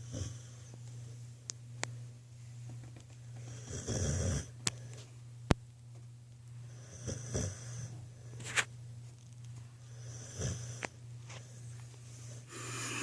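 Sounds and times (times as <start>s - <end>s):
puppy snoring: 0.0s - 0.7s, 3.4s - 4.6s, 6.7s - 8.0s, 9.9s - 11.6s, 12.2s - 13.0s.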